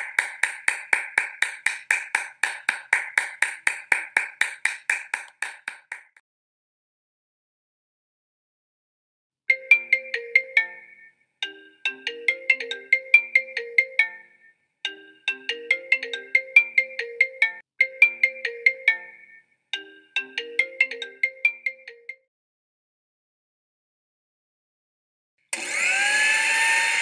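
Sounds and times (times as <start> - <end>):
mobile phone ringtone melody: 9.5 - 22.3.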